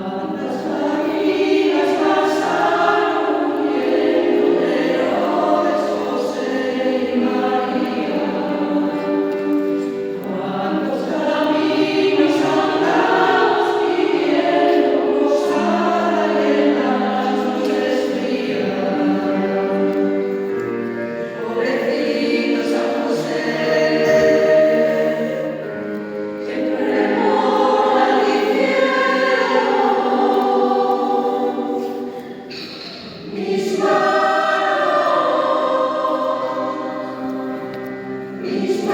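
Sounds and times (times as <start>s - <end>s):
choir singing in harmony: 0.0s - 38.9s.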